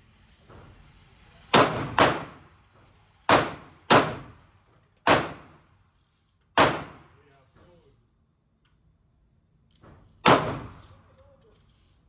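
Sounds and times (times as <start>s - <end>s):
pistol shots echoing indoors: 5.1s - 5.6s, 6.6s - 7.0s, 10.2s - 10.9s.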